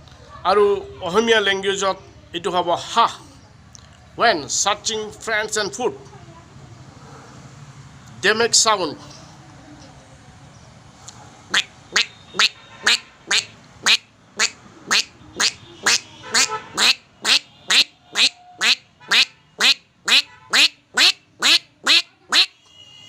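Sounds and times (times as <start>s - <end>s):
man imitating duck quacks: 11.5s - 22.5s.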